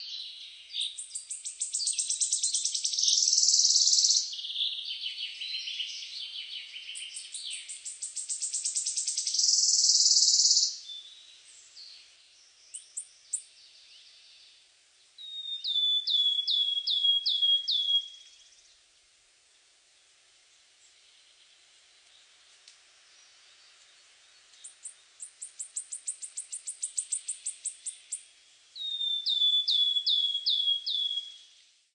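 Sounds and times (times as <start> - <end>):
birds singing trilled phrases: 0.0 - 14.6, 15.2 - 18.6, 24.4 - 31.6
bird whistled notes: 28.8 - 31.4.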